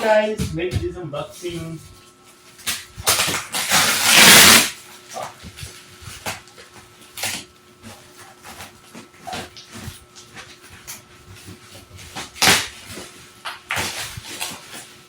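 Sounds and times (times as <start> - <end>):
cardboard box ripping open: 3.0 - 4.8, 12.1 - 13.1, 13.7 - 14.9.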